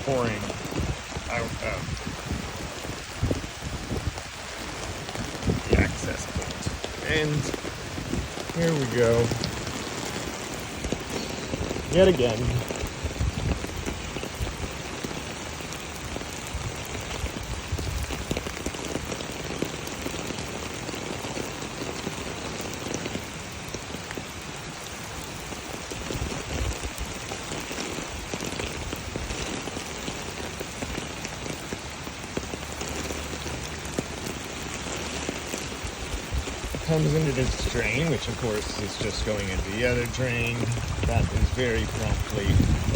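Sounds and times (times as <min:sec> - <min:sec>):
rain hissing: 0:00.0 - 0:42.9
storm water rushing into drain: 0:00.0 - 0:42.9.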